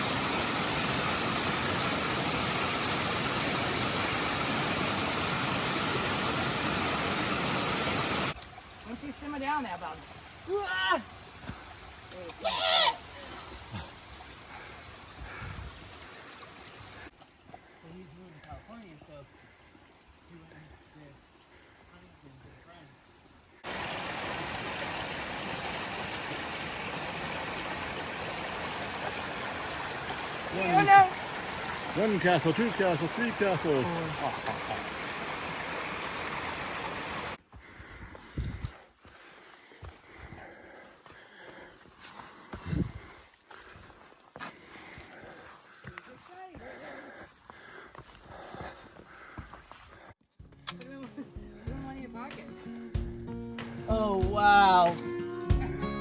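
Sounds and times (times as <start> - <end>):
mountain stream rushing: 0.0 - 15.2, 23.6 - 37.4
wind across microphone: 38.0 - 38.8, 42.6 - 43.1.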